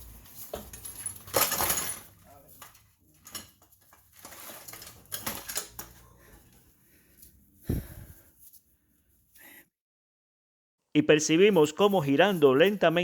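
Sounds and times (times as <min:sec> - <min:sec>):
clattering scrape: 0:00.0 - 0:06.0
metal tools clinking and knocking: 0:00.3 - 0:06.5.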